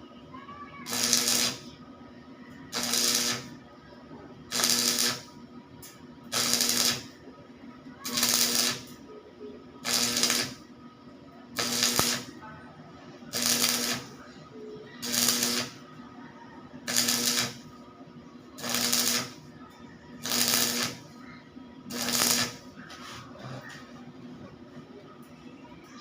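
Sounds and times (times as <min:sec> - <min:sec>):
welding arc crackling: 0:00.9 - 0:01.7, 0:02.7 - 0:03.6, 0:04.5 - 0:07.2, 0:08.0 - 0:09.0, 0:09.8 - 0:10.7, 0:11.6 - 0:12.4, 0:13.3 - 0:14.2, 0:15.0 - 0:15.8, 0:16.9 - 0:17.8, 0:18.6 - 0:19.5, 0:20.2 - 0:21.1, 0:21.9 - 0:22.7
welder hum: 0:00.9 - 0:01.8, 0:02.7 - 0:03.6, 0:04.5 - 0:07.2, 0:08.0 - 0:09.0, 0:09.8 - 0:10.7, 0:11.6 - 0:12.4, 0:13.3 - 0:14.2, 0:15.0 - 0:15.9, 0:16.8 - 0:17.8, 0:18.5 - 0:19.5, 0:20.2 - 0:21.2, 0:21.9 - 0:22.7.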